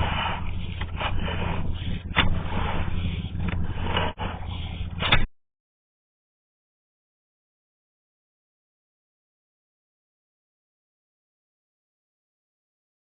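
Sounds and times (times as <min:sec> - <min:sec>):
cable scraping in drain pipe: 0:00.0 - 0:05.3
low mechanical hum: 0:00.0 - 0:05.3.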